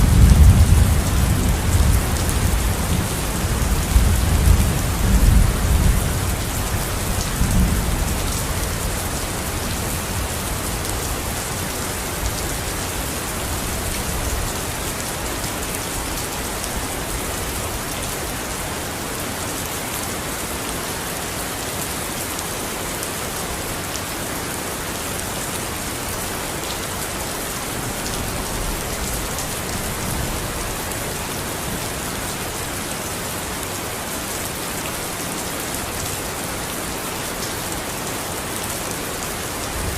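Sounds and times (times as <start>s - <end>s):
thunder rumble: 0.0s - 10.4s
steady rain: 0.0s - 39.9s.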